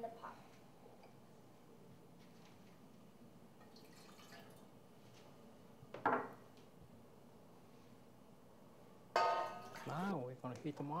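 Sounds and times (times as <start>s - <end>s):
liquid trickling into pot: 3.6s - 4.6s.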